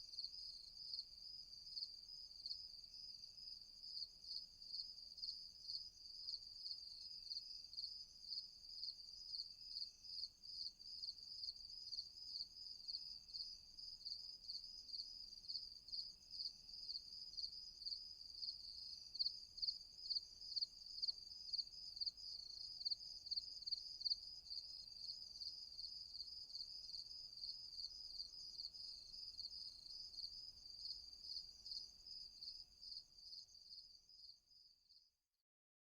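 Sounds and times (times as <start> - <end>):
crickets chirping: 0.0 - 35.1.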